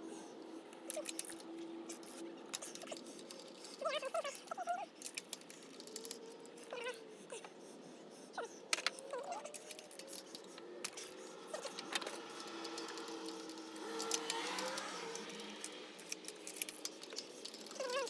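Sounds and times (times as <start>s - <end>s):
metal tools clinking and rattling: 0.8s - 6.8s, 8.8s - 18.0s
faint whining animal calls: 17.4s - 18.0s.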